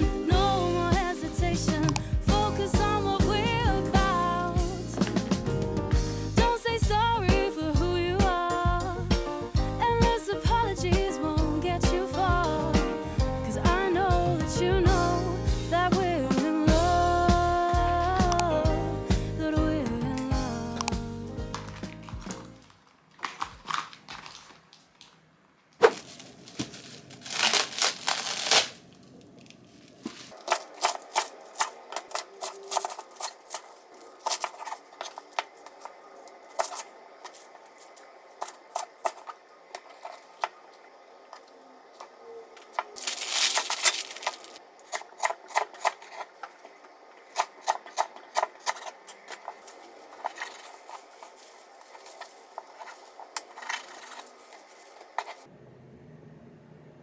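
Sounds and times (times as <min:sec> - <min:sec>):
short rustling bursts: 0:25.8 - 0:40.4, 0:43.0 - 0:44.6, 0:47.4 - 0:55.5.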